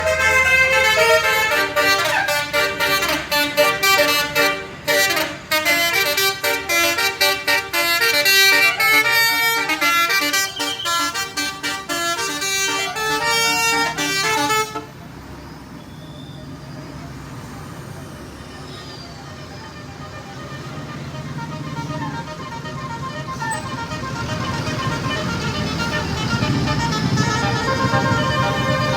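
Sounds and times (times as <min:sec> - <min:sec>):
multi-trumpet horn playing tune: 0:00.0 - 0:14.9, 0:20.2 - 0:28.9.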